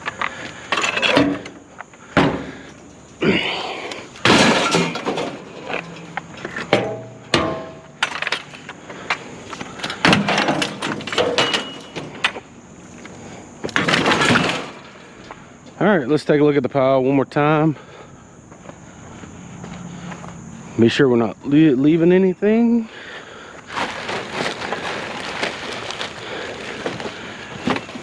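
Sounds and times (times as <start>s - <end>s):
scrap metal crashing onto load: 4.2s - 6.1s, 6.7s - 8.6s, 10.0s - 12.4s, 13.8s - 15.0s.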